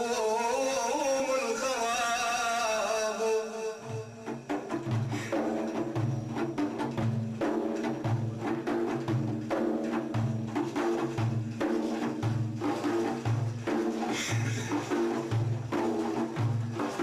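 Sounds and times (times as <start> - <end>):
frame drums booming and slapping: 4.2 - 17.0.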